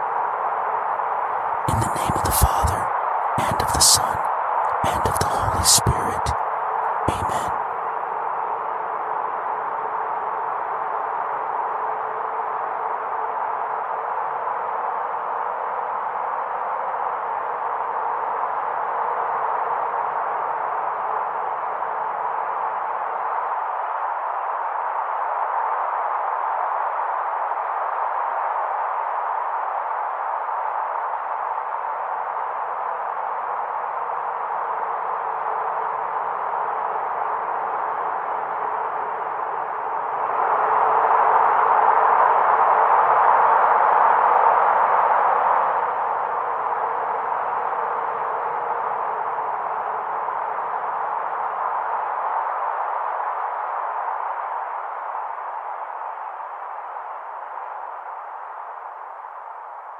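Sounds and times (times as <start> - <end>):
faint steady hum: 1.6 - 4.2, 4.8 - 6.4, 7.1 - 7.5.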